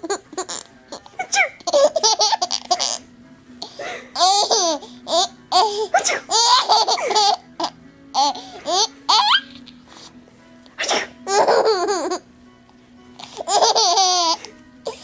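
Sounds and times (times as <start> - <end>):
baby giggling: 0.0 - 3.0, 3.6 - 9.8, 10.9 - 12.3, 13.2 - 15.0
adult fake sneezing: 5.9 - 6.3, 10.8 - 11.2.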